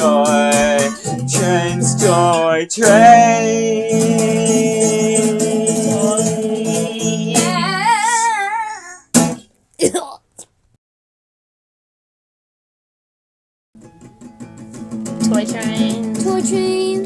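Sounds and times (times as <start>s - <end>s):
acoustic guitar strumming: 0.0s - 8.2s, 9.1s - 9.5s, 13.8s - 17.0s
person singing wordless line: 0.0s - 9.0s, 15.3s - 17.0s.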